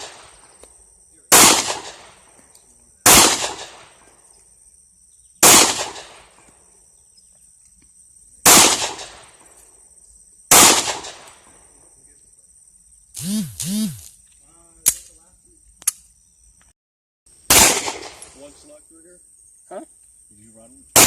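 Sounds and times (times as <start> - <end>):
gunshots with echo: 1.3 - 2.2.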